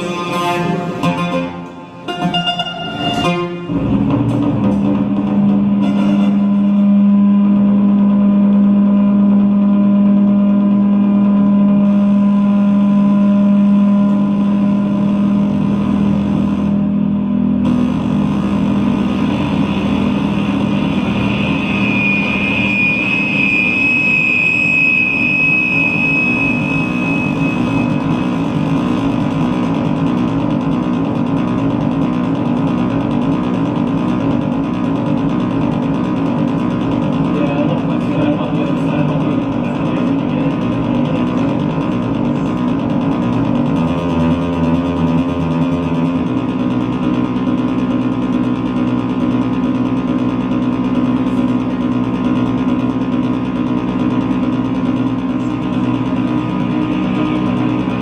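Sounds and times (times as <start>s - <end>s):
rough electronic drone: 0.0s - 58.0s
steady low hum: 0.0s - 58.0s
high whistling tone: 19.9s - 28.7s.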